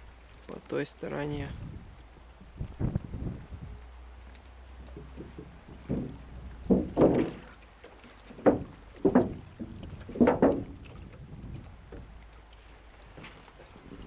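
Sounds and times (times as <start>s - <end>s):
low wind rumble: 1.2s - 7.3s, 8.4s - 12.3s
oars swishing and splashing: 1.8s - 14.0s.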